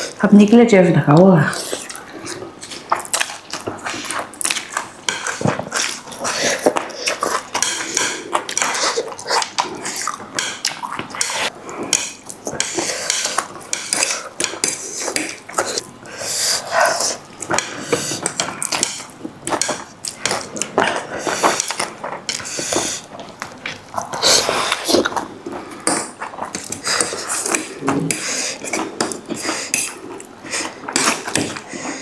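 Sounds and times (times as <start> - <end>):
wet slurping and chewing: 1.5 - 32.0
utensils clinking against a bowl: 3.0 - 15.9, 25.5 - 32.0.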